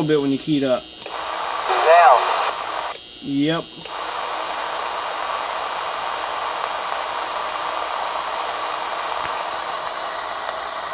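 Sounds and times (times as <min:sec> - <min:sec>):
radio static hiss: 0:00.0 - 0:10.9.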